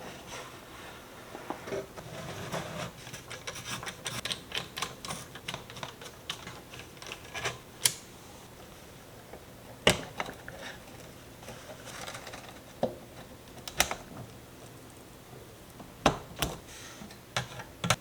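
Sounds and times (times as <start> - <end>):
computer parts clicking and tapping: 3.3 - 8.0.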